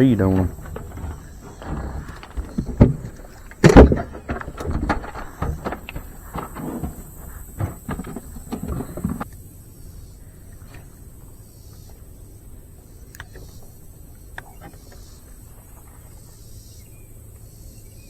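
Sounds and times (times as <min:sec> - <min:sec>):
knocks and clatters of handling: 0:00.0 - 0:09.3
loud thump: 0:00.3 - 0:09.2.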